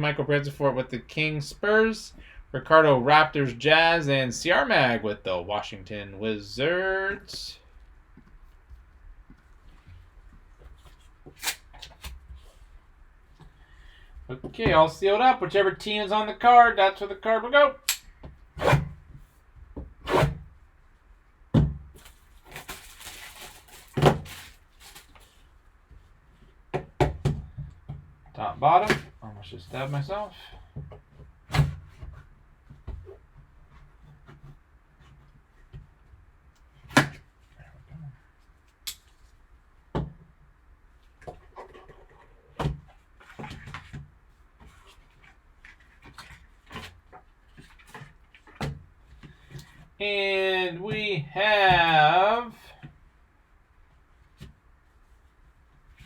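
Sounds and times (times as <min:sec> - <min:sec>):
cardboard scraping and rustling: 0:22.0 - 0:25.5.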